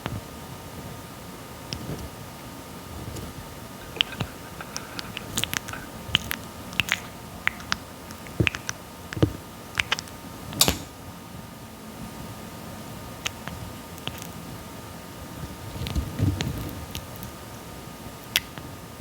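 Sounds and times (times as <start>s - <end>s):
tortoise chewing fruit: 3.2s - 10.0s.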